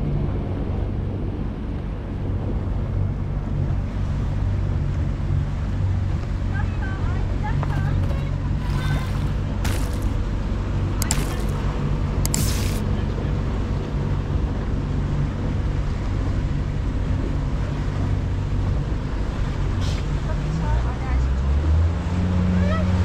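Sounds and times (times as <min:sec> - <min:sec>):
motorboat engine running: 0:00.0 - 0:23.0
water and wind noise: 0:00.0 - 0:23.0
short hissing bursts: 0:12.3 - 0:12.8.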